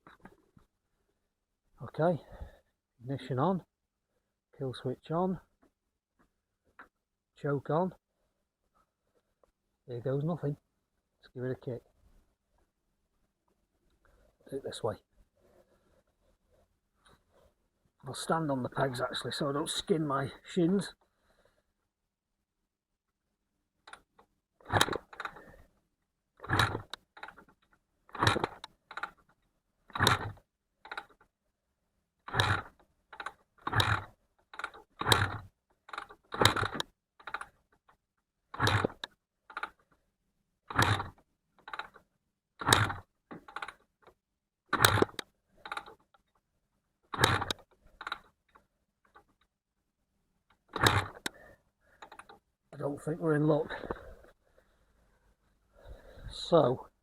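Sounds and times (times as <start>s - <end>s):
motorcycle kickstart clunking: 23.9s - 25.6s, 26.4s - 31.3s, 32.2s - 39.8s, 40.7s - 42.0s, 42.6s - 46.2s, 47.1s - 48.4s, 50.5s - 52.4s, 53.7s - 54.3s.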